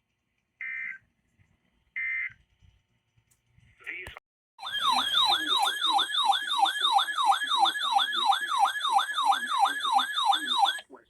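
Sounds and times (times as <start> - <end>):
electronic yelp siren: 4.6 - 11.0.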